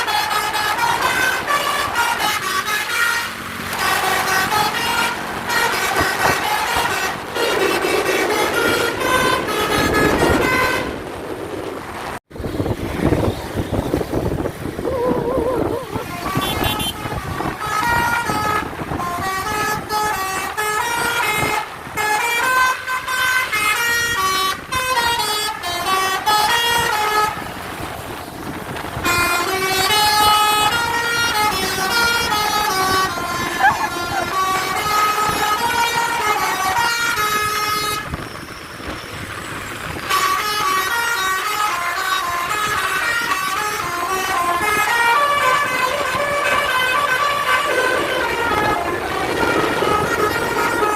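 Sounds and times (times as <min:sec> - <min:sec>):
musical bus air horn tune: 0:00.0 - 0:11.2, 0:16.0 - 0:27.6, 0:29.0 - 0:38.4, 0:40.0 - 0:50.9.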